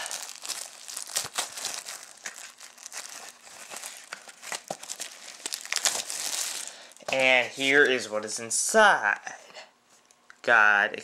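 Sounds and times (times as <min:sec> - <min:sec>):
plastic wrapping crinkling and tearing: 0:00.0 - 0:07.3.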